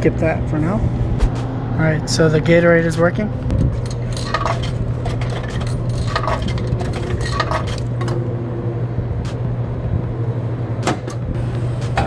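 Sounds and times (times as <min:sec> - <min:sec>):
low machine hum: 0:00.0 - 0:12.0
coins clinking in vending machine: 0:03.8 - 0:08.0.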